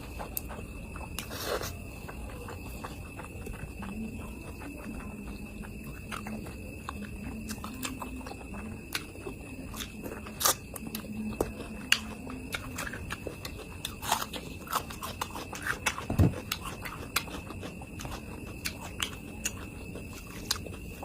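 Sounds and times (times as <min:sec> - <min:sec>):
person chewing and smacking: 0:00.0 - 0:21.0.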